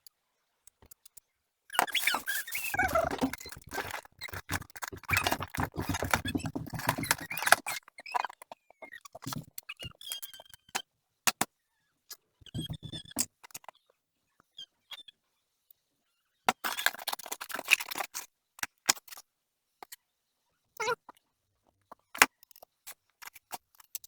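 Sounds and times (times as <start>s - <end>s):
packaging taps and squeaks: 1.8s - 11.4s, 12.4s - 13.7s
cardboard box rustling: 2.0s - 7.6s.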